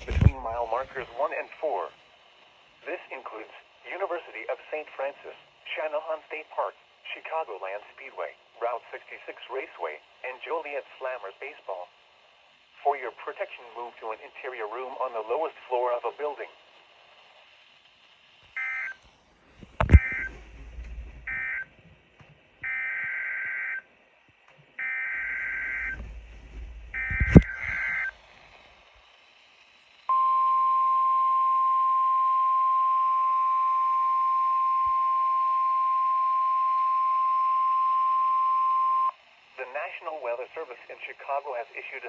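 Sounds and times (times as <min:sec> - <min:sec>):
steady warning alarm tone: 0:18.5 - 0:19.0, 0:19.9 - 0:20.6, 0:21.2 - 0:21.7, 0:22.6 - 0:23.9, 0:24.8 - 0:26.0, 0:26.9 - 0:28.2, 0:30.1 - 0:39.2
buzzy electronic data bursts: 0:26.7 - 0:28.5.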